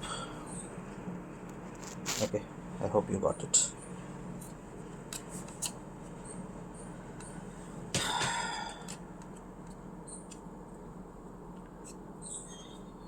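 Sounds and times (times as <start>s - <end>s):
rustling scrape: 1.7s - 2.3s.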